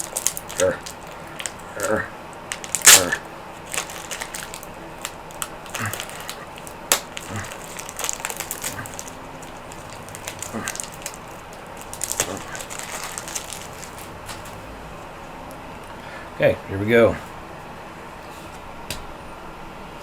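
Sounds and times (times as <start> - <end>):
packaging crinkling and rustling: 0.0 - 14.7.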